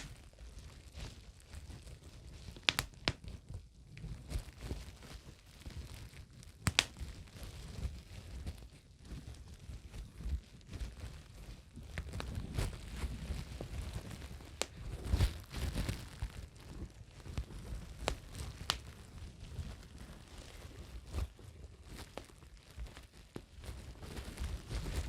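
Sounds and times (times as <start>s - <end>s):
crinkling and rustling: 0.0s - 25.0s
sharp pops and clicks: 2.6s - 3.4s, 6.6s - 7.1s, 18.0s - 18.9s.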